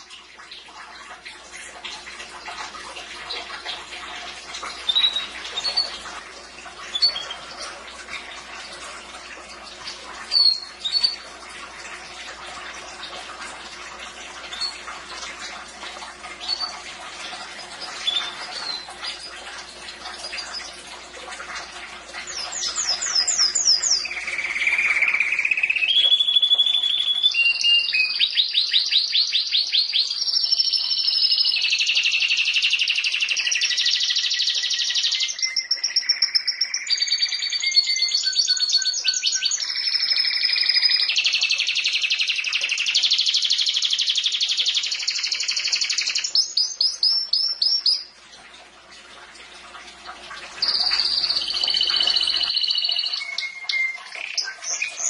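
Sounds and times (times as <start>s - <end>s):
canary singing: 22.3s - 48.1s, 50.6s - 55.0s.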